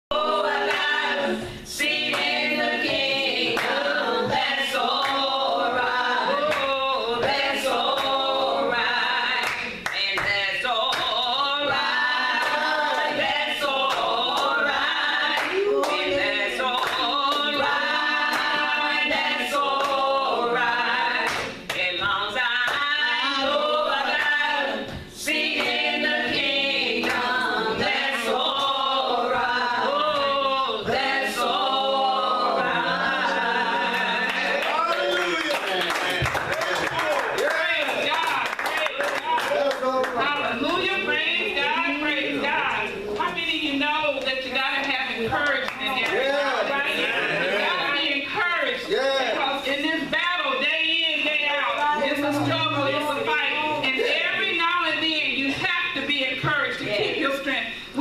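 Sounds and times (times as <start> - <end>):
choir singing: 0.1 - 35.2
hand claps: 9.4 - 11.2, 34.3 - 40.8.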